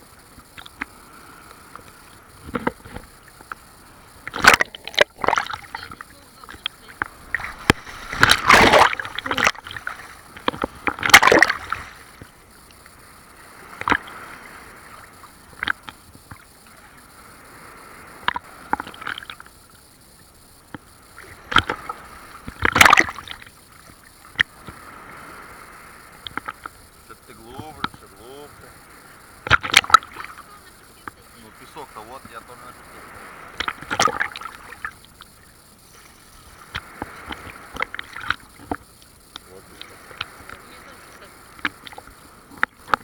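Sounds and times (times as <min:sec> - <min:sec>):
low rush of surf: 0:00.0 - 0:15.5, 0:16.5 - 0:19.3, 0:24.2 - 0:43.0
waves splashing over bathers: 0:04.1 - 0:12.2, 0:26.4 - 0:35.0, 0:39.4 - 0:43.0.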